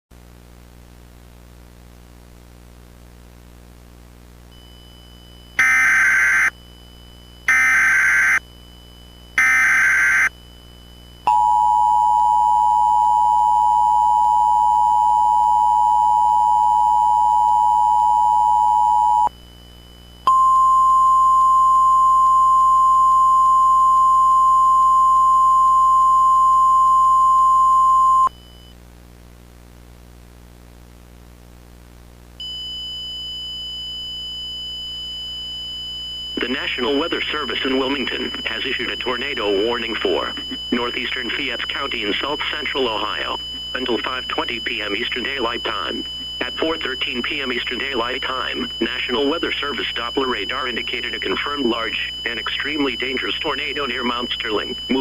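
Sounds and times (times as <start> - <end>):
steady warning alarm tone: 4.6 - 28.7, 32.4 - 55.0
two-tone attention signal: 20.3 - 28.3.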